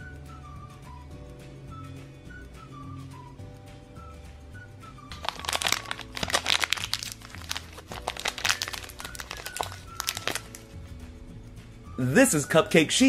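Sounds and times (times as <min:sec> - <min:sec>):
light background music: 0:00.0 - 0:13.0
plastic wrapper crinkling: 0:05.1 - 0:10.7.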